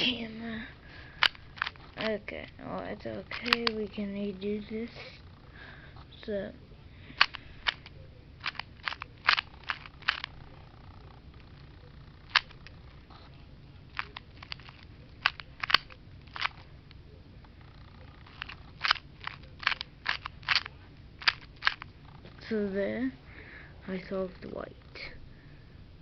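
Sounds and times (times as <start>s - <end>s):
puzzle cube layers clicking: 1.2s - 2.2s, 2.8s - 4.0s, 7.2s - 12.9s, 13.9s - 16.7s, 18.0s - 22.6s.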